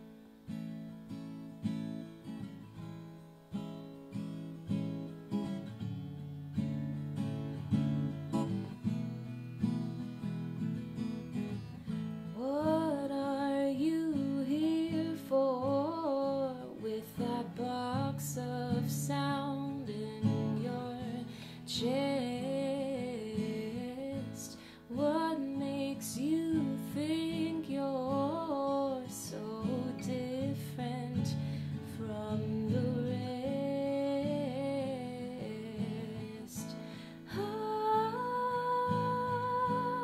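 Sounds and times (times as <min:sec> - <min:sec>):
acoustic guitar: 0:00.0 - 0:40.0
woman singing: 0:12.3 - 0:40.0.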